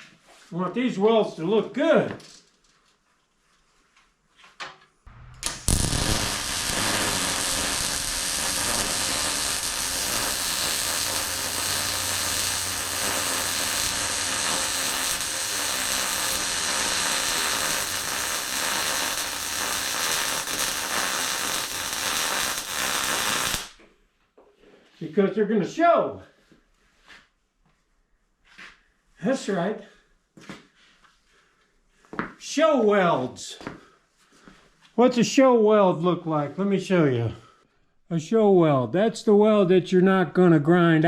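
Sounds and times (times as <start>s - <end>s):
welding arc crackling: 5.1s - 23.8s.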